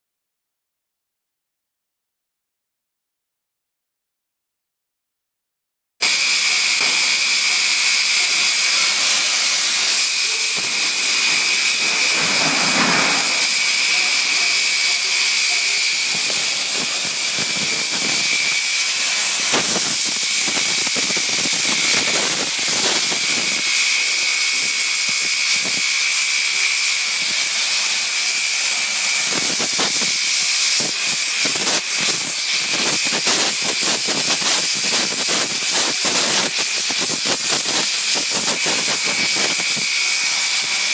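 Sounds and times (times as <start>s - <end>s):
high steady whine: 6.0s - 18.5s
torch cutting metal hiss: 6.0s - 40.9s
scattered crackles: 6.9s - 18.6s.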